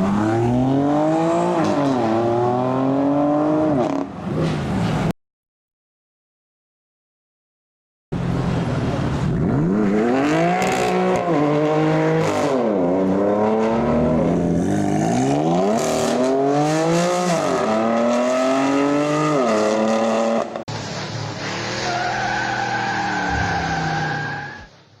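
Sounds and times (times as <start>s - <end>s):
tyre squeal: 21.4s - 24.8s.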